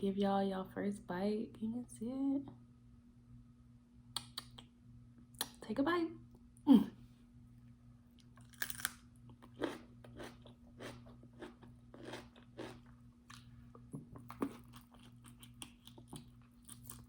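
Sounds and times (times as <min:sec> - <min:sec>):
faint steady hum: 0:00.0 - 0:17.0
close-up chewing: 0:08.2 - 0:17.0
crunchy bite of cucumber: 0:08.4 - 0:13.5.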